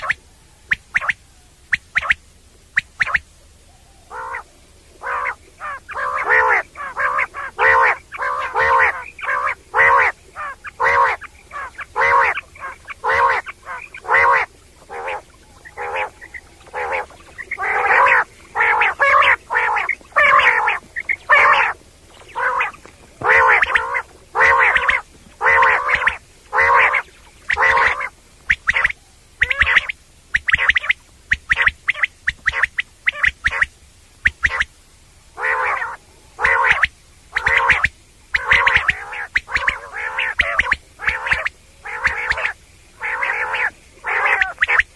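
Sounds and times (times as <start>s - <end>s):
quail calling: 0.0s - 44.9s.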